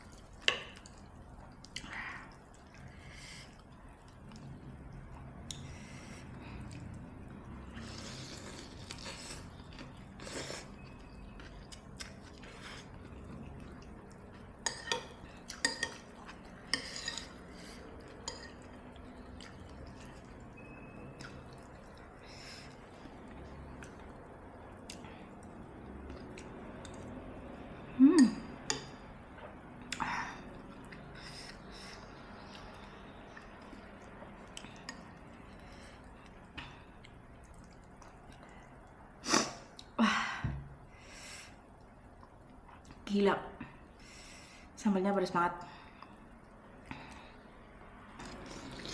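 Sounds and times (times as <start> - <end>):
spoon clinking against bowl: 14.6 - 16.0.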